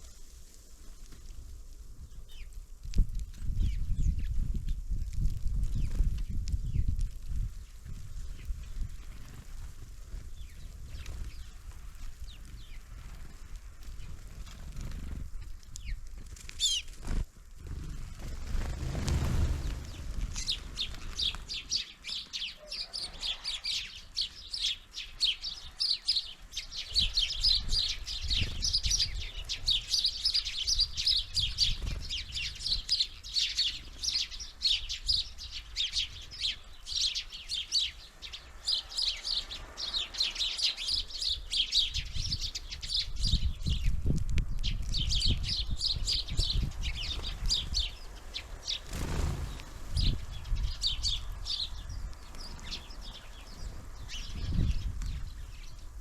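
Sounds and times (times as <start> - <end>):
small birds chirping: 0.8 - 56.0.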